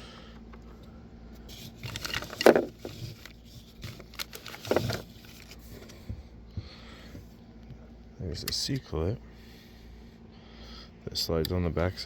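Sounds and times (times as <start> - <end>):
clicks and knocks of small parts: 1.8 - 5.5.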